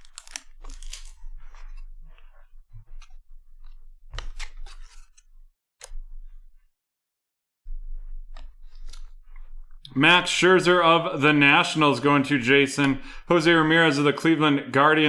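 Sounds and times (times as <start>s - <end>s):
trading cards clicking and rustling: 0.0s - 1.2s.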